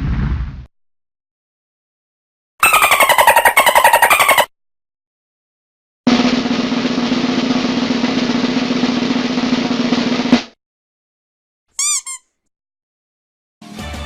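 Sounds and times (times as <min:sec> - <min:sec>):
sharp drum hit: 0:06.1 - 0:10.6
snare drum roll: 0:06.1 - 0:10.6.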